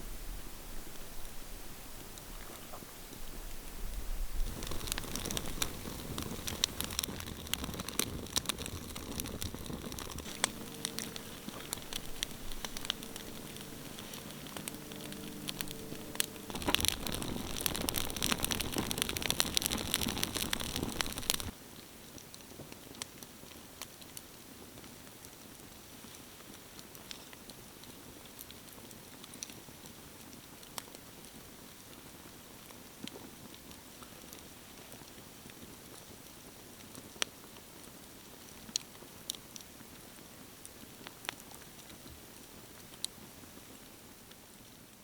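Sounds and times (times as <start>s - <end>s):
faint low hum: 0.0s - 6.9s, 9.4s - 21.5s
dense crackling and popping: 0.0s - 45.0s.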